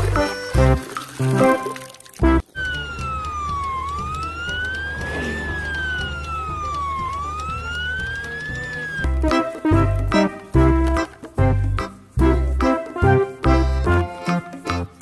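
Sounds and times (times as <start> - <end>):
electronic wail siren: 2.6 - 9.1.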